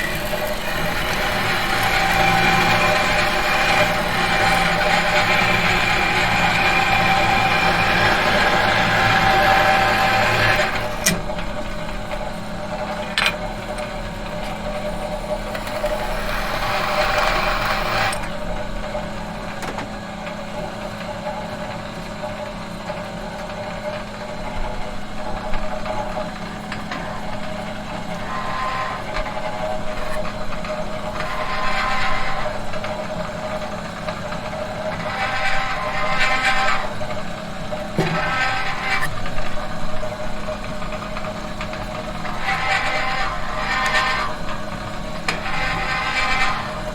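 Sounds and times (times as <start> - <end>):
machine humming: 0.0 - 19.6.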